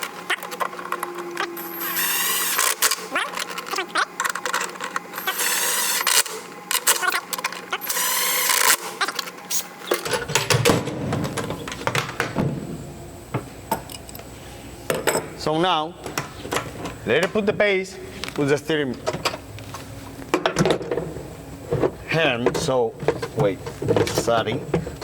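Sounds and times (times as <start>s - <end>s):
short rasping bursts: 1.3s - 4.0s, 5.2s - 9.1s
clicks and metal knocks: 9.1s - 12.6s, 20.3s - 25.0s
handling bumps: 9.8s - 14.2s, 14.8s - 25.0s.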